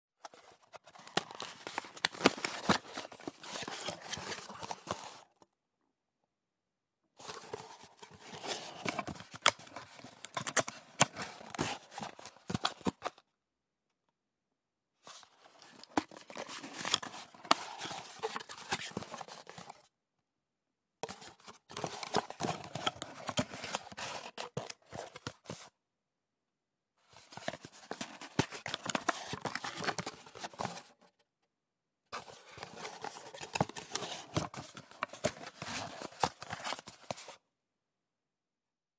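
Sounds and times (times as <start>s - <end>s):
cardboard box rustling and scraping: 0.3s - 5.2s, 7.2s - 13.2s, 15.1s - 19.8s, 21.0s - 25.7s, 27.2s - 31.0s, 32.2s - 37.4s.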